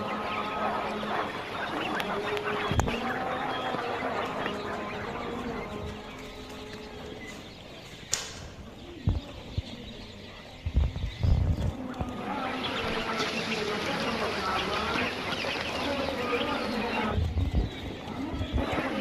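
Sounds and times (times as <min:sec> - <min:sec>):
quails chirping and calling: 0:00.0 - 0:19.0
sharp click: 0:08.1 - 0:08.6.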